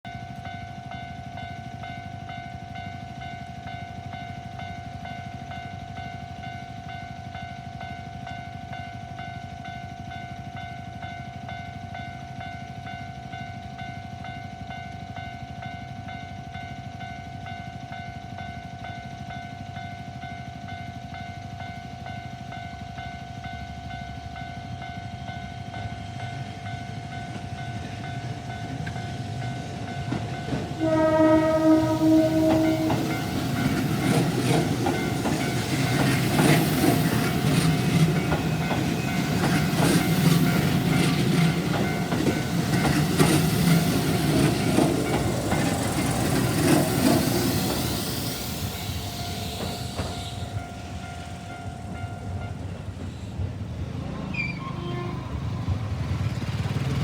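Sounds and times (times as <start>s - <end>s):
train rumble: 9.6s - 57.0s
level crossing alarm ringing: 25.8s - 47.8s.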